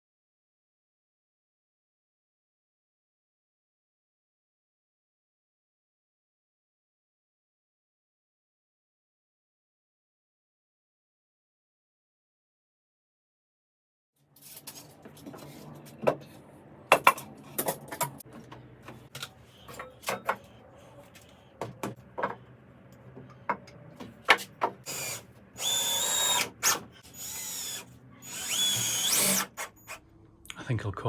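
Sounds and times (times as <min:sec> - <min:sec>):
wood and tools clattering: 0:14.4 - 0:20.6
cordless drill whining: 0:24.9 - 0:30.0.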